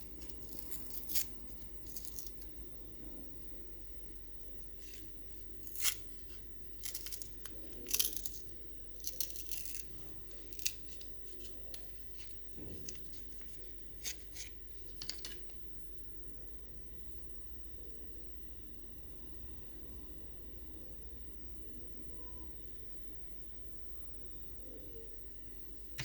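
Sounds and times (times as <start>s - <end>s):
packaging tearing open: 5.6s - 11.5s.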